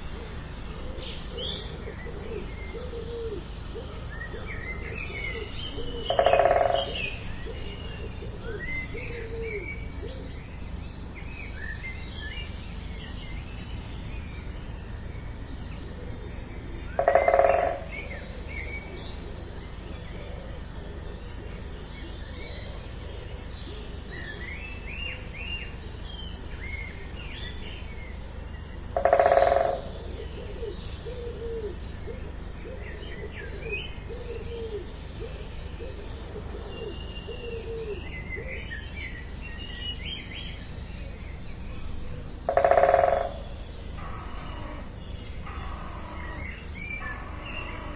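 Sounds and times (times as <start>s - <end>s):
small birds chirping: 0.0s - 47.9s
woodpecker drumming on wood: 6.1s - 7.0s, 17.0s - 17.9s, 28.9s - 29.9s, 42.4s - 44.7s.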